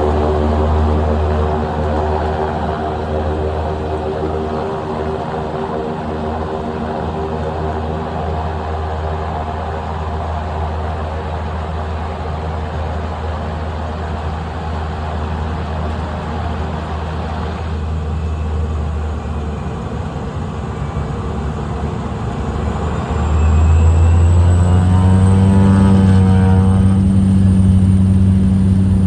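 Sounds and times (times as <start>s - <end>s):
small plane engine and propeller: 0.0s - 29.0s.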